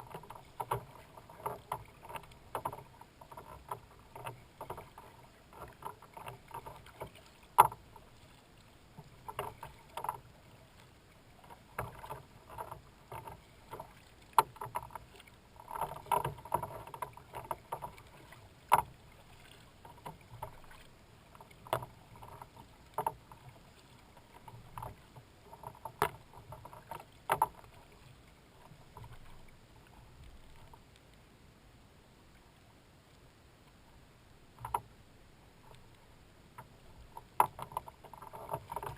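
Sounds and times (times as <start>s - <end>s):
paddle splashes and slaps: 0.0s - 29.6s.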